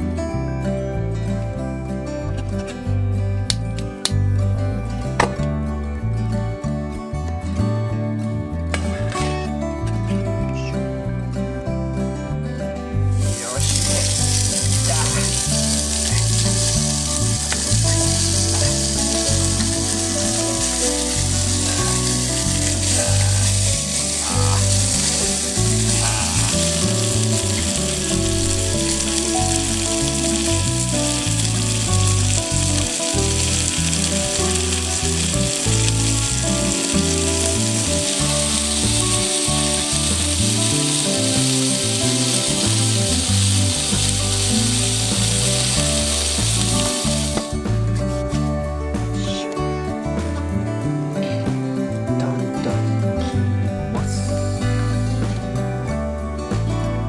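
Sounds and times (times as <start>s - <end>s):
food sizzling in a pan: 13.2s - 47.6s.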